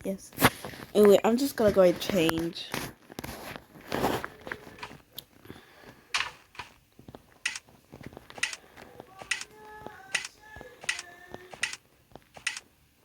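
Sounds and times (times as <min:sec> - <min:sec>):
sharp clicks: 0:06.2 - 0:06.8, 0:07.4 - 0:07.6, 0:08.3 - 0:08.6, 0:09.2 - 0:09.5, 0:10.1 - 0:12.7.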